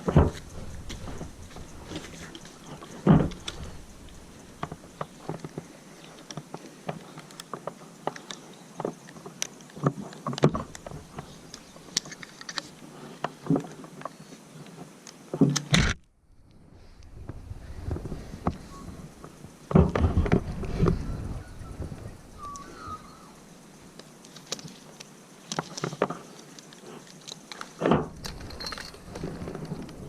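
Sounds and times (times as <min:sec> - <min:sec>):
clicks knocks and rubbing of gear: 0:00.0 - 0:16.0, 0:23.9 - 0:30.0.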